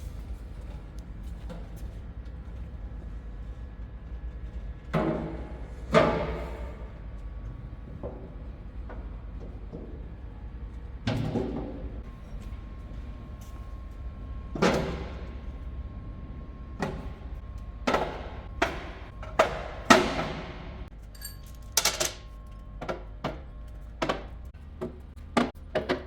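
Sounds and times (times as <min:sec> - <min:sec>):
heavy metal pieces clanking: 0:21.0 - 0:22.5.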